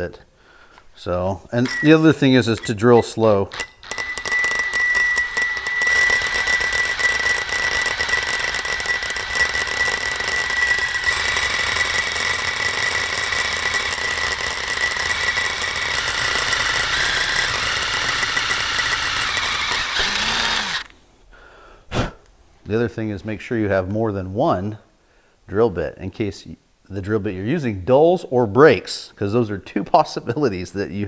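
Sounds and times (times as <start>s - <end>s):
drill grinding through steel: 1.6s - 20.9s.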